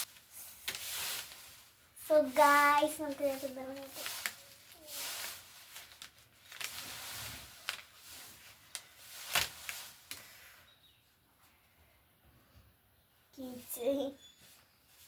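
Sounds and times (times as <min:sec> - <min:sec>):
packaging rustling and crinkling: 0:00.0 - 0:10.4.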